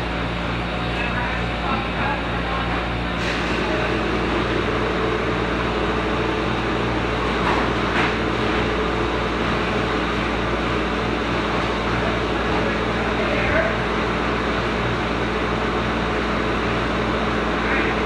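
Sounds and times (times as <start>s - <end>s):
compressor hum: 0.0s - 18.0s
fan rushing: 0.0s - 18.0s.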